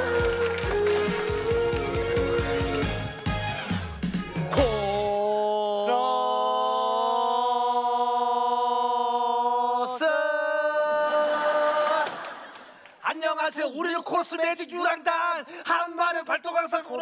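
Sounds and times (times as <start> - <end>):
voices singing a cappella: 4.6 - 12.6.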